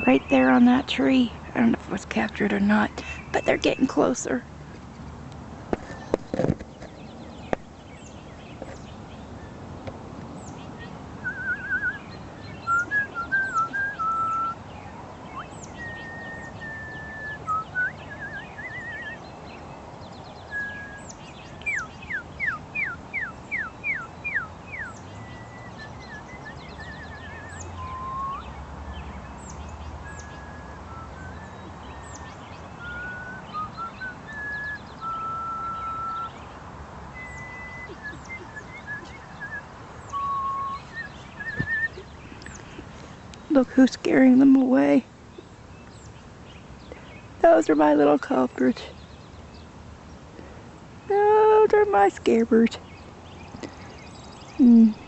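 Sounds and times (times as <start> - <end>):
small birds chipping: 0.0 - 55.0
woman whistling bird calls: 11.2 - 14.6, 15.3 - 19.2, 20.5 - 21.0, 21.6 - 28.6, 30.0 - 36.4, 37.2 - 42.0.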